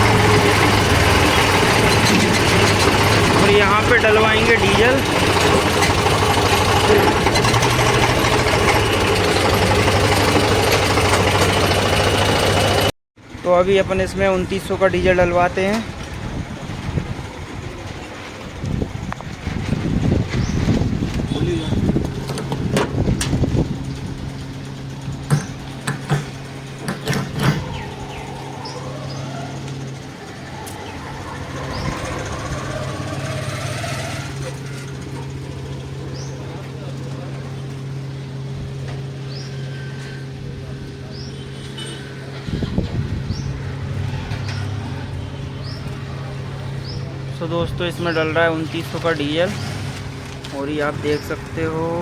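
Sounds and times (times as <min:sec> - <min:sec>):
tractor diesel engine idling: 0:00.0 - 0:15.8, 0:21.1 - 0:41.1
sharp clicks and knocks: 0:25.2 - 0:27.8.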